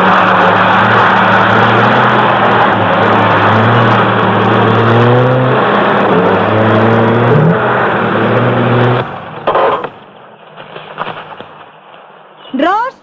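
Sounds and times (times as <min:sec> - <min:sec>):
loud engine-like whirring: 0:00.0 - 0:10.3
sharp crack: 0:08.4 - 0:12.3.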